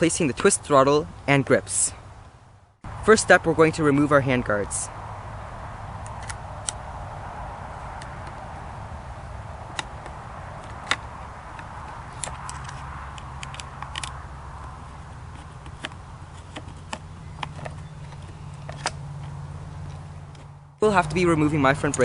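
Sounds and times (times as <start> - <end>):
hand tools clicking and tapping: 9.7 - 22.0.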